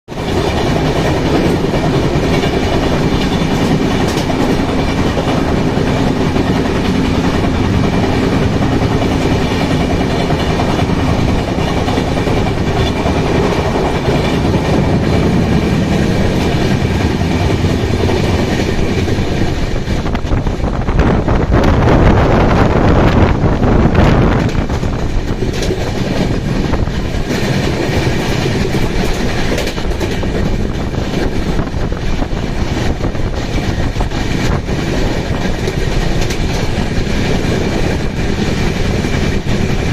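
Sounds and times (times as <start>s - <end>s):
wheel clicks on rail: 0.1s - 21.0s, 23.0s - 39.9s
train wheels rumbling on rail: 0.1s - 39.9s.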